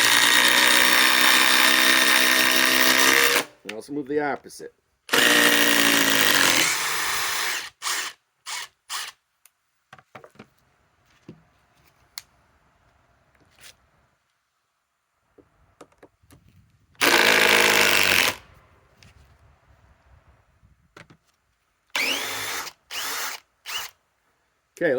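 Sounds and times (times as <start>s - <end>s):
cordless impact driver: 0.0s - 3.6s, 5.1s - 9.2s, 17.0s - 18.4s, 21.9s - 24.0s.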